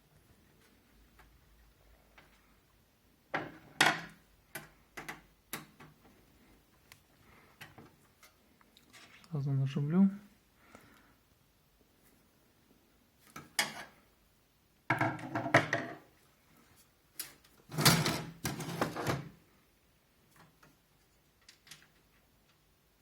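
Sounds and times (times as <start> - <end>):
knocks scrapes and rattles: 17.7 - 19.4.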